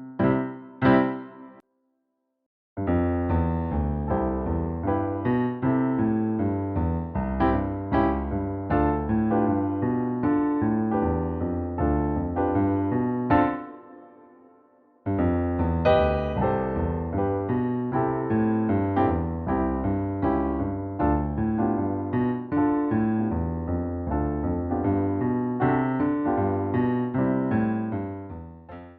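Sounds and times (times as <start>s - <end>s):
electric piano playing: 0.0s - 1.6s, 2.8s - 28.9s.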